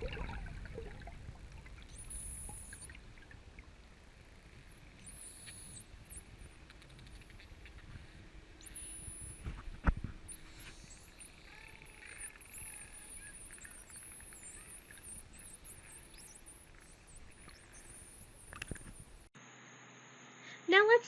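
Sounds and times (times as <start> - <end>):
dolphin whistles: 1.9 - 3.3, 4.6 - 6.5, 8.6 - 9.5, 10.3 - 19.1.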